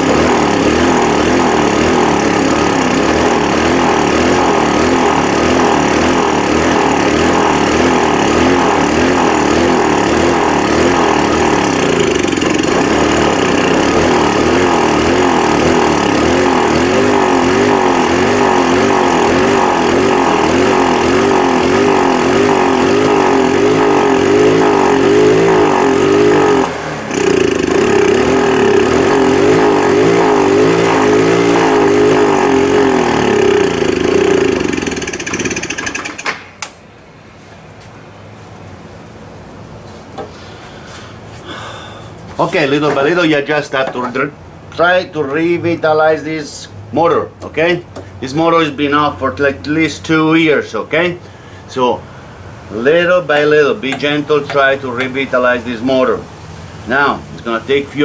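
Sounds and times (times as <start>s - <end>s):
starter cranking scooter engine: 0.0s - 36.7s.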